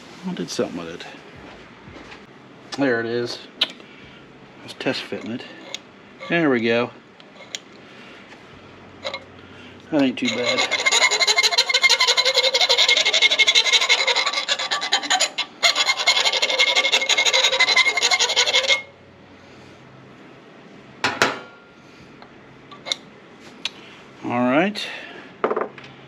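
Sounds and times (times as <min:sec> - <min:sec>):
rasping and scraping on metal: 0:07.3 - 0:07.6, 0:09.0 - 0:09.2, 0:10.1 - 0:18.9.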